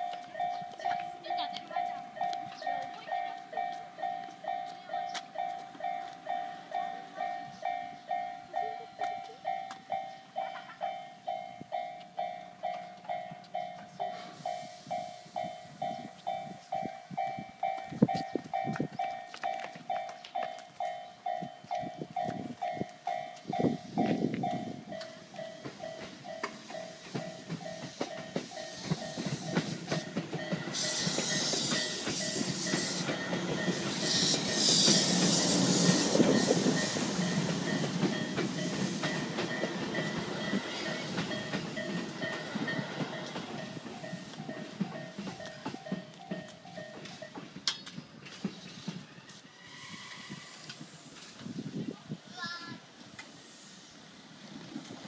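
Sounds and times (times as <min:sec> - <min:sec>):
level crossing bell ringing: 0:00.0 - 0:34.6, 0:36.3 - 0:47.4
train running noise: 0:00.0 - 0:55.0
high hiss bursts: 0:27.8 - 0:30.0, 0:30.6 - 0:33.1, 0:33.9 - 0:37.7, 0:53.0 - 0:54.6.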